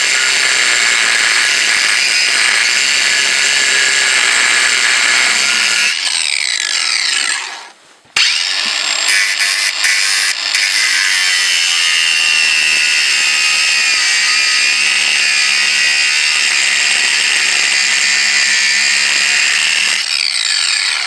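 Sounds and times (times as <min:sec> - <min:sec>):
power tool cutting screw: 0:00.0 - 0:21.0.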